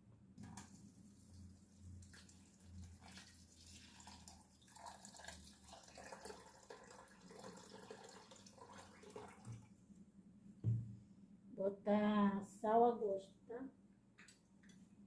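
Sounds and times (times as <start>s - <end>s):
faint kitchen clicks and taps: 14.1s - 15.0s.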